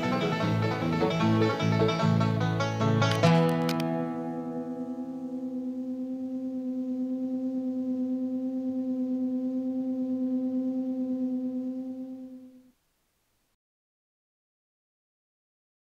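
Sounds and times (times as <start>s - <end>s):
background music long held note: 0.0s - 12.7s.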